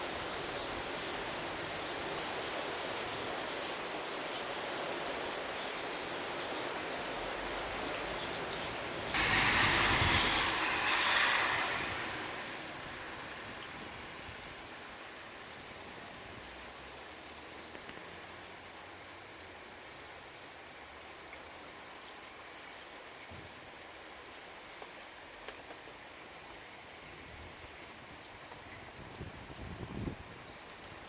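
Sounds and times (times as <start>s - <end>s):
rushing hiss: 0.0s - 15.9s
rain falling: 0.0s - 31.0s.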